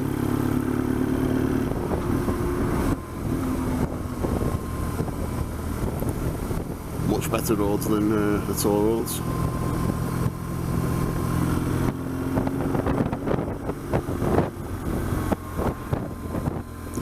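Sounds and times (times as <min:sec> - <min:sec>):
motorcycle engine running: 0:00.0 - 0:17.0
wind noise on microphone: 0:01.6 - 0:07.4, 0:09.3 - 0:17.0.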